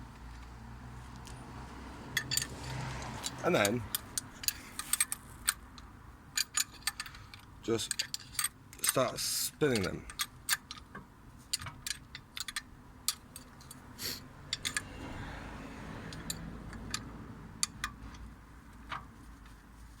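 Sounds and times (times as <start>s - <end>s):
spanners clicking on bolt: 2.2s - 10.9s, 14.5s - 14.9s.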